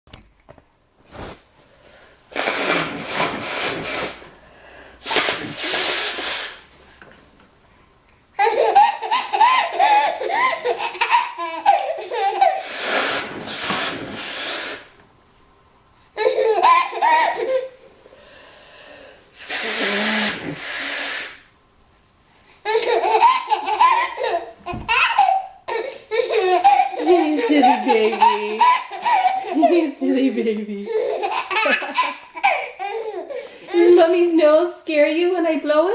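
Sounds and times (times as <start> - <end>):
woman blowing her nose: 2.3 - 4.4, 5.0 - 6.7, 12.4 - 15.0, 19.3 - 21.5
baby belly laughing: 8.4 - 13.3, 16.2 - 17.8, 22.6 - 34.1.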